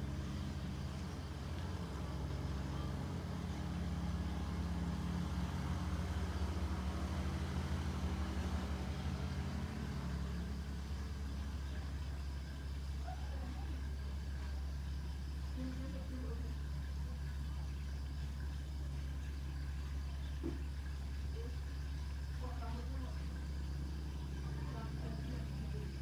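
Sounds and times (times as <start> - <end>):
low motor hum: 0.0 - 26.0.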